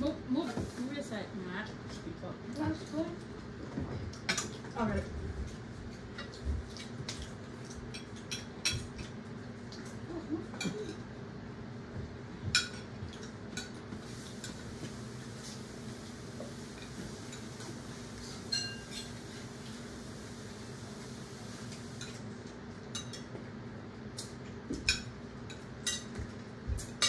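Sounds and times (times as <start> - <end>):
low steady hum: 0.0 - 27.0
dishes and cutlery clinking: 6.1 - 9.2, 12.5 - 13.8, 16.8 - 19.2, 22.9 - 23.3, 24.2 - 27.0.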